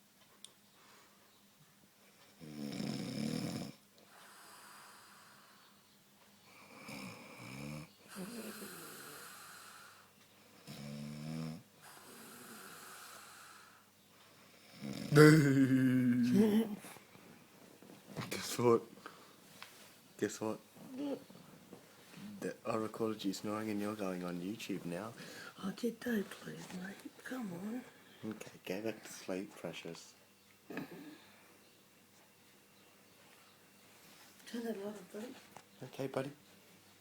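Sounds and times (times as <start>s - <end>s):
woman snoring: 2.4s - 5.6s, 6.6s - 13.8s, 14.6s - 16.8s
breathy out-breaths: 15.1s - 16.9s, 25.2s - 25.6s.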